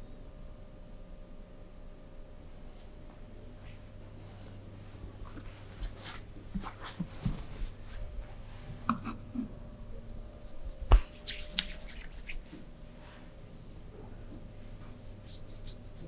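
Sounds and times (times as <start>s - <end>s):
hands rubbing on skin: 10.9s - 12.7s, 15.1s - 16.0s.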